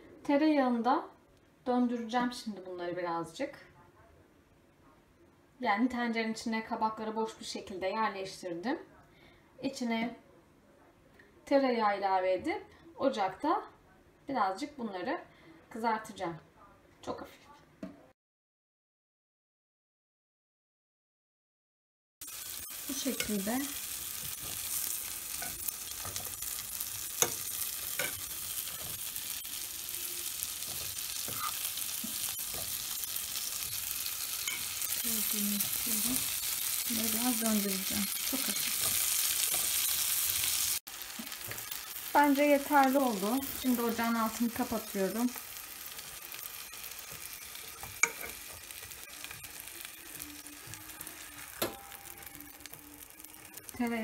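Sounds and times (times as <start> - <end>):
butter sizzling in a pot: 22.2 - 54.0.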